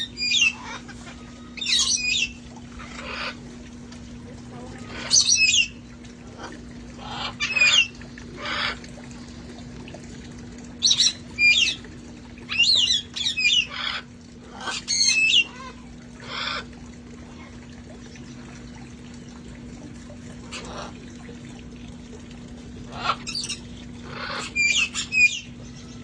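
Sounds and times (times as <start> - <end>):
parrots squawking: 0.0 - 3.4, 4.8 - 5.8, 7.0 - 8.8, 10.8 - 11.8, 12.5 - 16.7, 22.9 - 25.9
steady low hum: 0.0 - 26.0.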